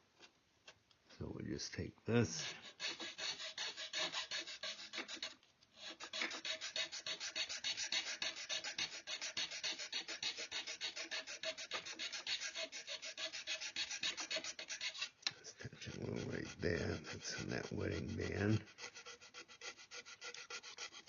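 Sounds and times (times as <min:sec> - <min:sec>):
hand file rasping: 0:02.1 - 0:21.0.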